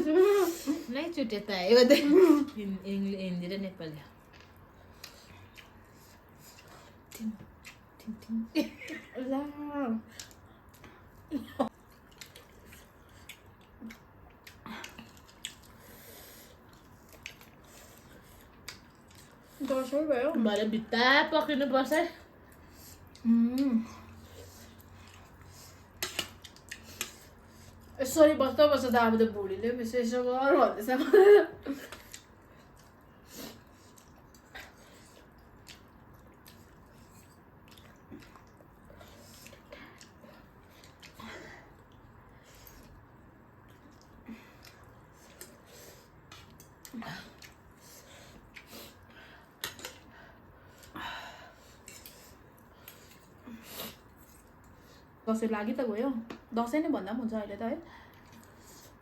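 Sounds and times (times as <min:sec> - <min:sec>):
person chewing food: 0:04.1 - 0:08.3, 0:10.1 - 0:19.6, 0:22.4 - 0:28.0, 0:31.9 - 0:51.0, 0:51.6 - 0:54.8, 0:58.1 - 0:59.0.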